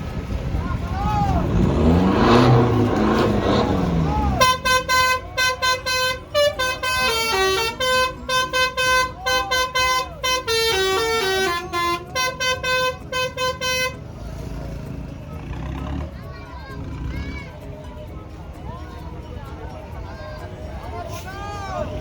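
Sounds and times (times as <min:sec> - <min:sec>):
musical bus horn playing melody: 0:01.7 - 0:14.9.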